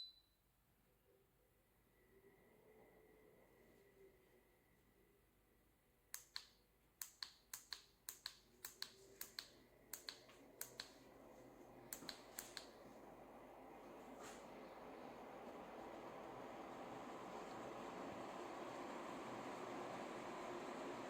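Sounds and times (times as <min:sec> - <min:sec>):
faint sharp clicks: 0:06.2 - 0:11.0, 0:11.9 - 0:12.8
faint airy hiss: 0:08.6 - 0:21.0.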